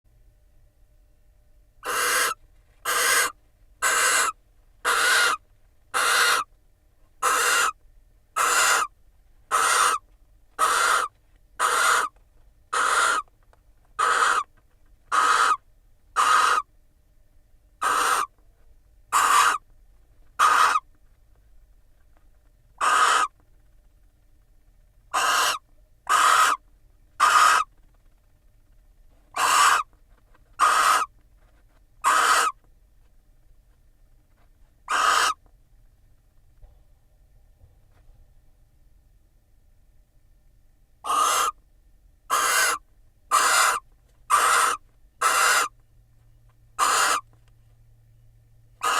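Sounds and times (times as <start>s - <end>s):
owl rasping hiss calls: 1.8s - 6.5s, 7.2s - 7.8s, 8.4s - 8.9s, 9.5s - 10.0s, 10.6s - 13.3s, 14.0s - 14.5s, 15.1s - 15.6s, 16.2s - 16.7s, 17.8s - 18.3s, 19.1s - 19.6s, 20.4s - 20.9s, 22.8s - 23.4s, 25.1s - 26.6s, 27.2s - 27.7s, 29.3s - 29.9s, 30.6s - 31.1s, 32.0s - 32.6s, 34.9s - 35.4s, 41.0s - 41.6s, 42.3s - 45.7s, 46.8s - 47.2s.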